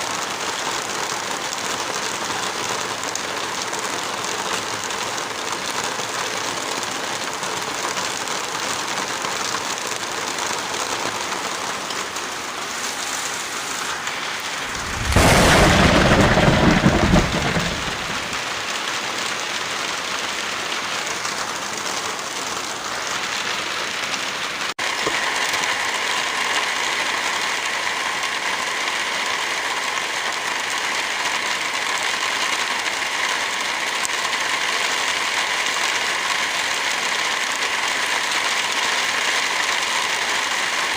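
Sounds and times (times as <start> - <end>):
heavy rain: 0.0 - 40.9
loud low rumble: 14.6 - 18.4.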